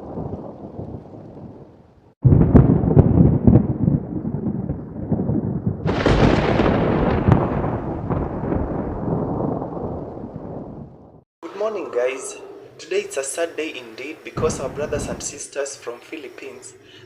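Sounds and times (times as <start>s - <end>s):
deep rumbling with crackles: 0.0s - 11.3s, 14.4s - 15.4s.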